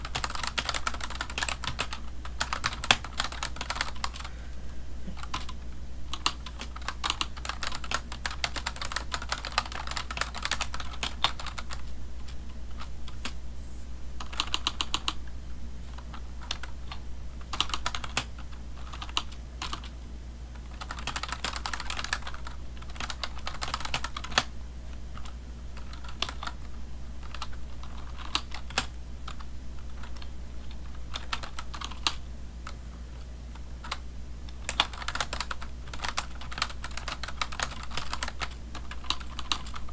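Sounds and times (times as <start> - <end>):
computer keyboard typing: 0.0 - 4.3, 5.2 - 11.8, 16.0 - 19.9, 20.7 - 24.5, 25.2 - 26.6, 31.1 - 32.2, 34.6 - 39.9
steady low hum: 0.0 - 20.6.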